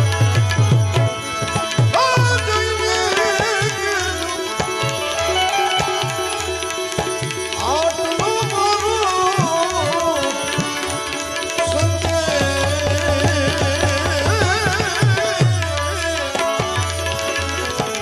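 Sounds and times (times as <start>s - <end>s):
hand drums beat: 0.0s - 2.5s
held accompanying tones: 0.0s - 18.0s.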